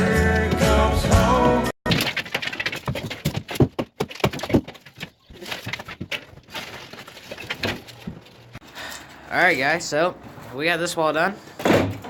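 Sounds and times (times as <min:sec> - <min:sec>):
boards and debris clattering: 0:01.8 - 0:08.7.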